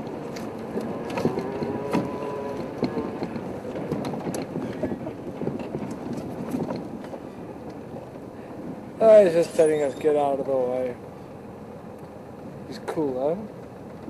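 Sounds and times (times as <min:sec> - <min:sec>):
vehicle engine running: 0:00.0 - 0:09.5
bodywork rattles and knocks: 0:00.0 - 0:10.8.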